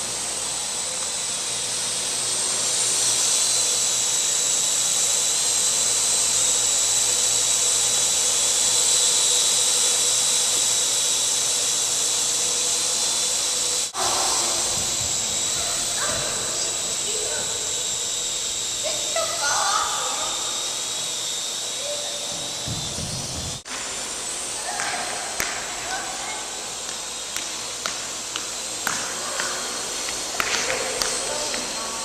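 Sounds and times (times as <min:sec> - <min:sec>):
drone propellers whining: 0:00.0 - 0:32.0.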